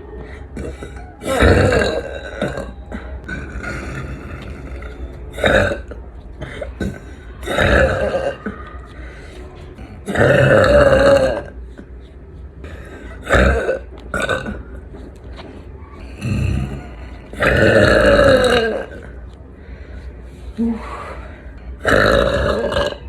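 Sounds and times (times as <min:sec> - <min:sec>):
woman burping loudly: 0:00.5 - 0:08.6, 0:09.8 - 0:11.6, 0:12.7 - 0:14.8, 0:16.1 - 0:19.2, 0:21.8 - 0:23.0.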